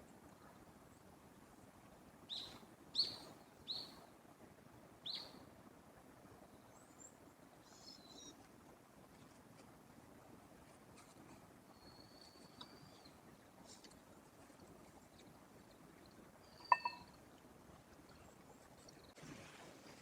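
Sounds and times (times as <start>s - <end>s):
bird chirps: 16.5s - 17.1s.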